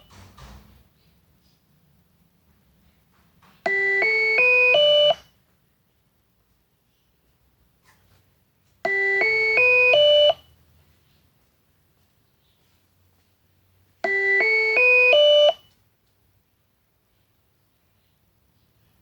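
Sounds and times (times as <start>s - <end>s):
electronic intercom chime: 3.7s - 5.2s, 8.9s - 10.5s, 14.0s - 15.7s.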